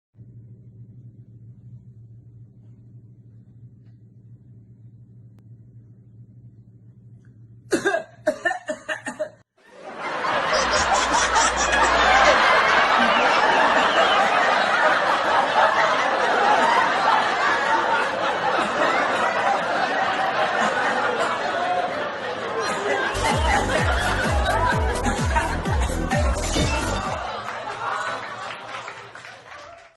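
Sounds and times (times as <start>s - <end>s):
harsh coughing: 7.7s - 9.4s
crowd laughing loudly: 9.6s - 29.9s.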